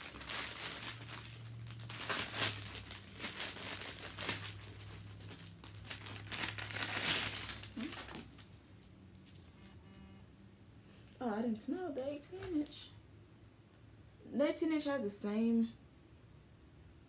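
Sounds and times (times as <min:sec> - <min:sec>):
plastic wrapping crinkling: 0:00.0 - 0:09.7.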